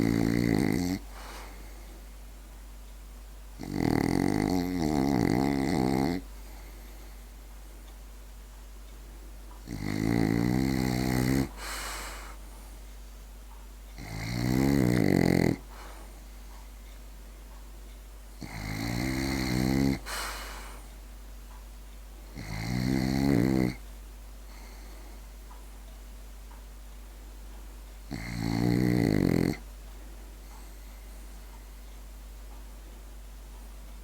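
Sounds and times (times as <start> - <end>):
dog snoring: 0.0 - 1.8, 3.6 - 7.1, 9.6 - 12.4, 14.0 - 16.1, 18.4 - 20.9, 22.3 - 23.8, 28.1 - 29.7
soft hissing breath: 0.0 - 2.8, 4.4 - 7.9, 9.7 - 13.2, 15.4 - 17.4, 18.4 - 21.2, 24.4 - 25.9, 28.3 - 34.0.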